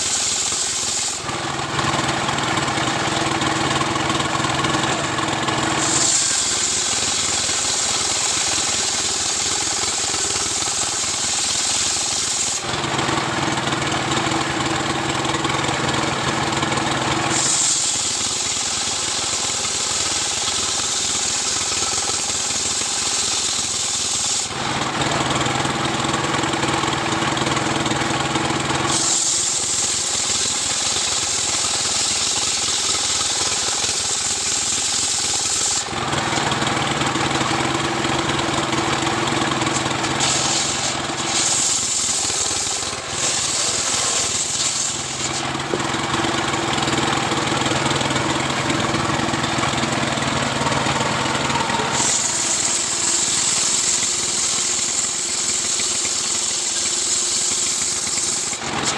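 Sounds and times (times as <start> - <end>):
chainsaw cutting log: 0.0 - 58.9.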